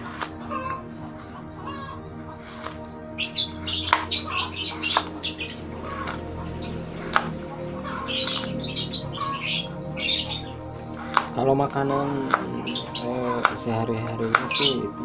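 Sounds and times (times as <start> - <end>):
birds chirping shrilly: 0.0 - 15.0.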